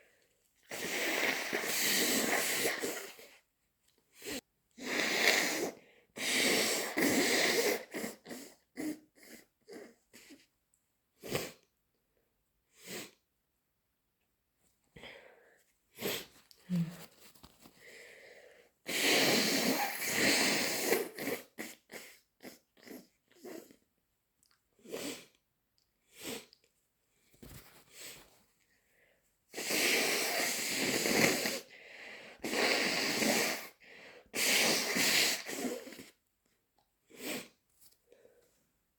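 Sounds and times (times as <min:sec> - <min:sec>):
sniffs and breaths: 0:00.0 - 0:03.4, 0:15.0 - 0:23.8, 0:27.2 - 0:36.2
person blowing nose: 0:00.7 - 0:03.4, 0:04.1 - 0:10.4, 0:11.2 - 0:11.6, 0:12.7 - 0:13.2, 0:15.9 - 0:23.8, 0:24.8 - 0:25.4, 0:26.1 - 0:26.6, 0:29.5 - 0:36.2, 0:37.1 - 0:37.6.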